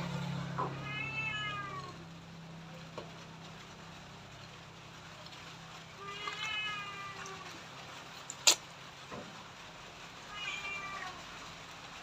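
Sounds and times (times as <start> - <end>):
cat meowing: 0.6 - 2.0, 6.0 - 7.6, 10.3 - 11.3.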